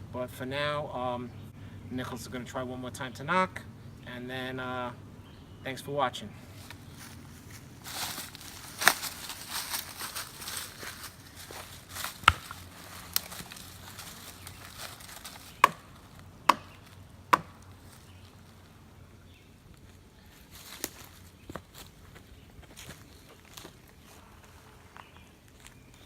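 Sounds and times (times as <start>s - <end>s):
stick knocking on tree trunk: 12.0s - 13.3s, 15.3s - 17.6s.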